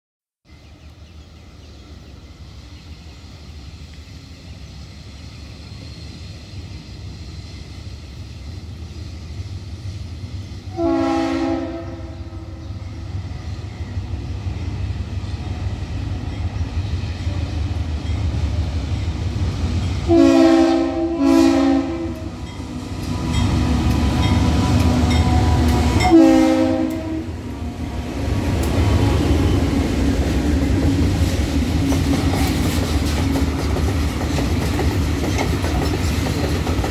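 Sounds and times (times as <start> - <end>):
diesel locomotive engine rumble: 0.5 - 36.9
train air horn blasts: 10.7 - 12.6, 20.1 - 22.5, 24.2 - 28.1.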